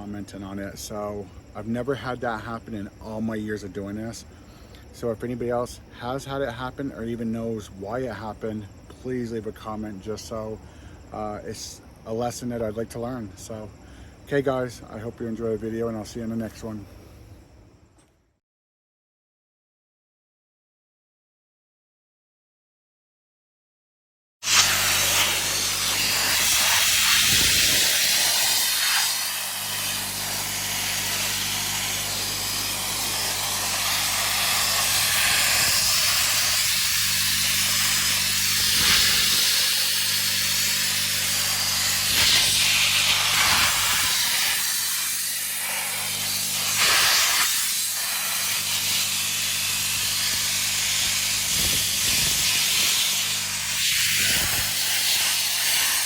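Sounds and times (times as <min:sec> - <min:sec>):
abrasive blaster nozzle hiss: 0:24.4 - 0:56.0
compressor drone: 0:24.4 - 0:56.0.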